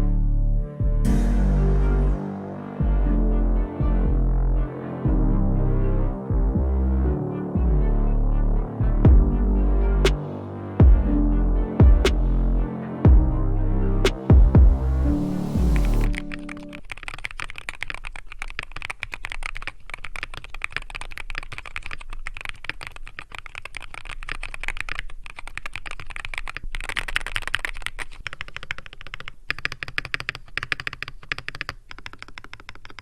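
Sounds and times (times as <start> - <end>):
fast keyboard typing: 16.2 - 33.0.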